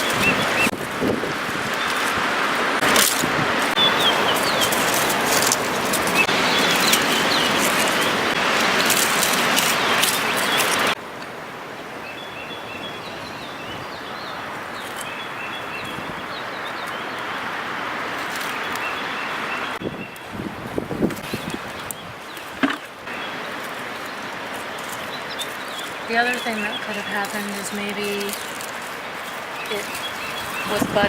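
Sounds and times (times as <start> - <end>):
small birds chirping: 0.0 - 0.8, 2.8 - 11.0, 12.0 - 31.0
soft breeze: 0.0 - 31.0
wind rushing over microphone: 0.0 - 31.0.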